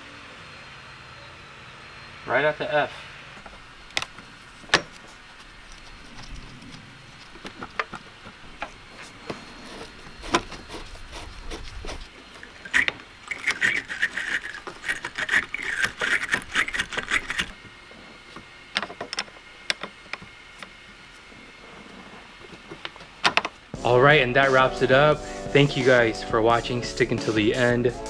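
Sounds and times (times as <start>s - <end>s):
tool scraping metal: 8.9s - 17.6s.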